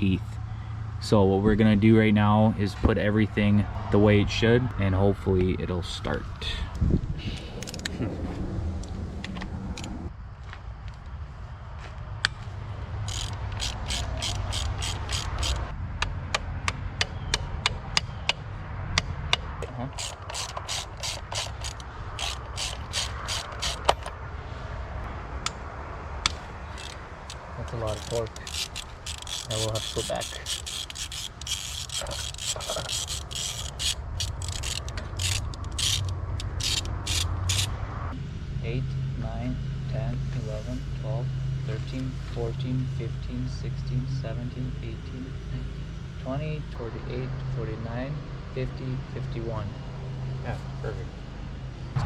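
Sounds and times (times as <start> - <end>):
steady low hum: 0.0 - 52.0
ratchet wrench rasping: 13.0 - 15.7, 19.6 - 24.2, 26.3 - 37.8
sharp ratchet clicks: 13.0 - 15.7, 19.0 - 24.2, 26.2 - 37.8.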